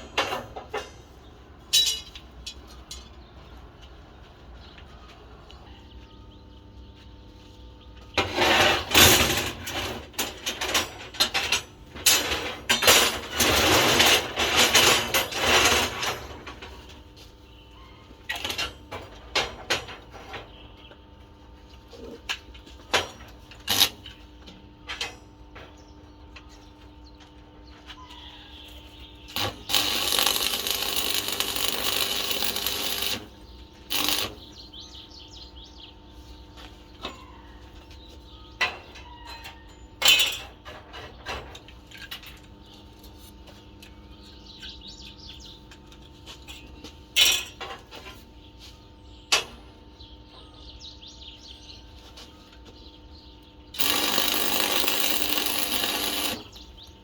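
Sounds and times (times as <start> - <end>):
loud tool noise: 23.7 - 24.0, 29.3 - 34.5, 53.8 - 56.7.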